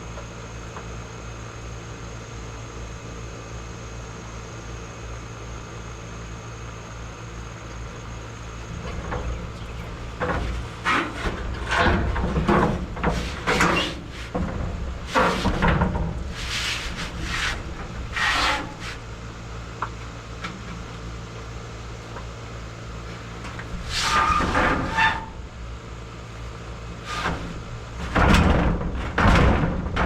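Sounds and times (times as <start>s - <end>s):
steady low hum: 1.1s - 24.0s
scraping and rubbing: 8.7s - 15.7s, 16.3s - 19.1s.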